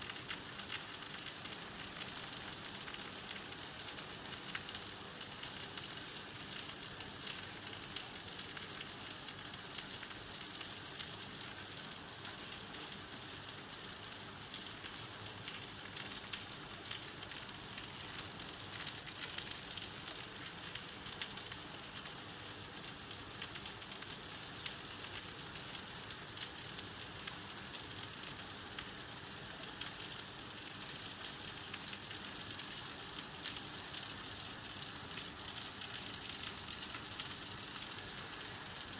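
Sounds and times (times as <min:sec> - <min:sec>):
rain on hard surfaces: 0:00.0 - 0:38.9.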